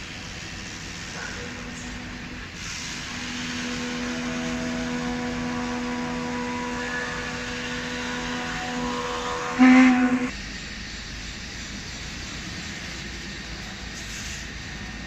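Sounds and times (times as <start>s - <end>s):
even tones over hiss: 0.0s - 10.4s
router spindle motor humming: 1.2s - 10.3s.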